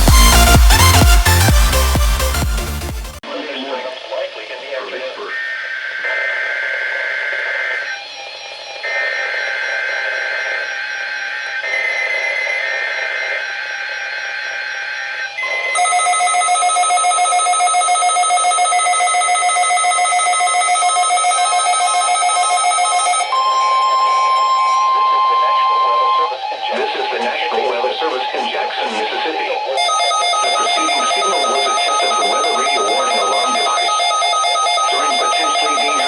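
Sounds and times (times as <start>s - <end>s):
steady single alarm tone: 6.5s - 26.4s, 29.8s - 36.0s
pulsing electronic alert tone: 29.8s - 36.0s.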